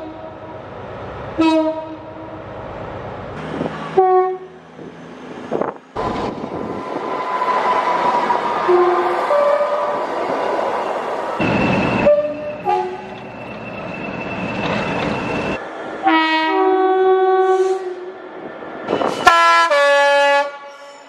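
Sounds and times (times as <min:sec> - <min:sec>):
rumble of passing trains: 0:00.0 - 0:21.0
two-tone train air horns: 0:01.4 - 0:02.3, 0:03.9 - 0:04.5, 0:08.6 - 0:10.0, 0:11.9 - 0:13.1, 0:16.0 - 0:18.1, 0:19.2 - 0:21.0.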